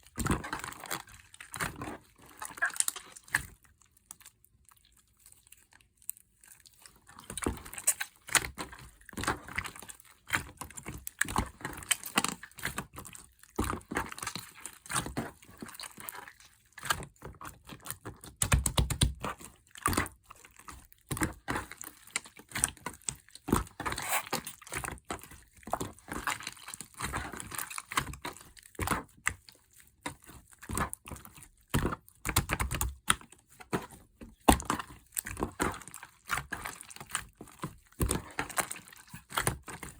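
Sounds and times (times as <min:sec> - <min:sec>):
slime squishing: 0:00.0 - 0:39.9.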